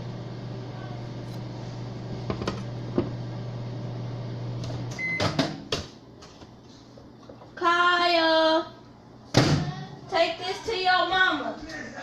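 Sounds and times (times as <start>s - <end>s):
microwave oven humming: 0.0s - 12.0s
microwave beep: 4.9s - 5.4s.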